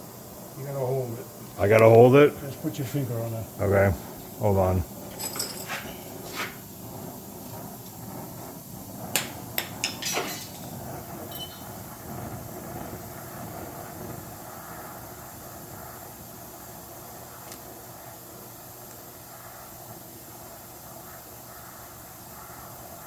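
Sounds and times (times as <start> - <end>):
metal clinks of brass and tools: 5.1 - 6.3, 9.8 - 11.8.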